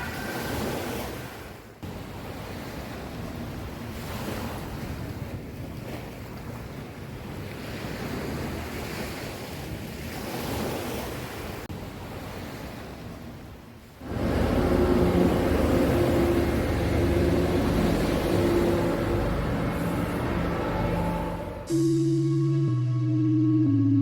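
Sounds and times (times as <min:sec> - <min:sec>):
ocean surf washing ashore: 0:00.0 - 0:21.8
music with held notes: 0:14.1 - 0:24.0.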